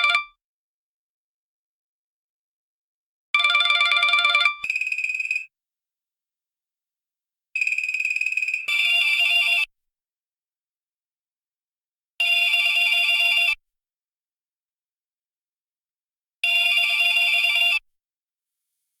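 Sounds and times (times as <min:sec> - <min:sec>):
telephone ringing: 0:03.4 - 0:05.5, 0:07.6 - 0:09.7.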